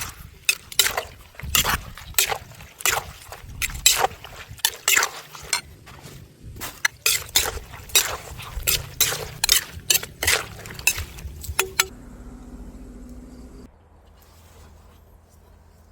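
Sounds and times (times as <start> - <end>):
utensils knocking against dish: 6.8 - 11.9
low steady hum: 7.4 - 15.9.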